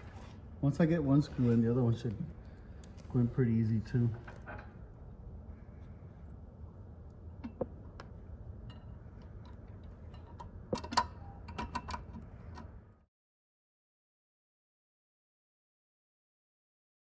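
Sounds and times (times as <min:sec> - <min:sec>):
small metal bolts clicking: 0:08.7 - 0:12.7.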